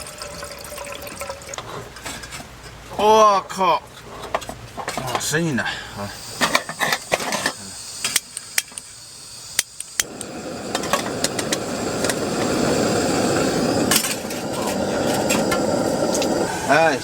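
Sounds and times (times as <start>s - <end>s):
tap water running into container: 0.0s - 1.7s.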